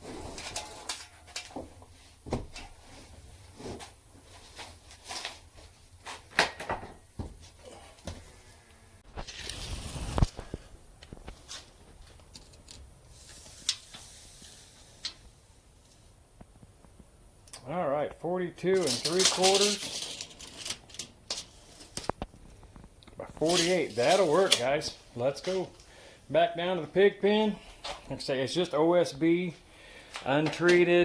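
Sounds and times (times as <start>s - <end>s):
board scraping slide: 9.1s - 10.6s.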